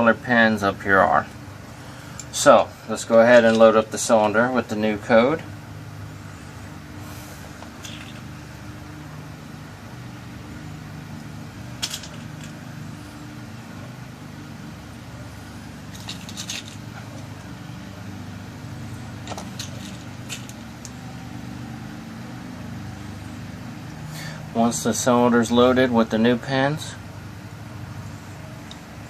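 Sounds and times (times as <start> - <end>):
steady low hum: 0.0 - 29.0
small metallic clicks: 19.2 - 21.0.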